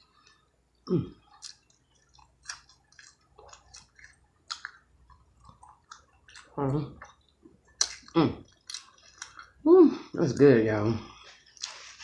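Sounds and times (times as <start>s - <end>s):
chewing fried fish: 1.2s - 9.7s, 10.3s - 12.0s
wet mouth clicks and lip smacks: 1.3s - 9.5s.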